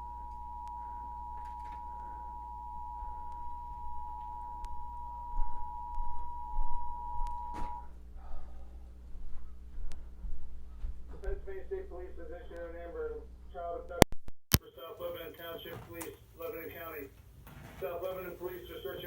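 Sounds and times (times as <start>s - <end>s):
two-tone alert signal: 0.0s - 7.8s
low steady hum: 0.0s - 14.0s.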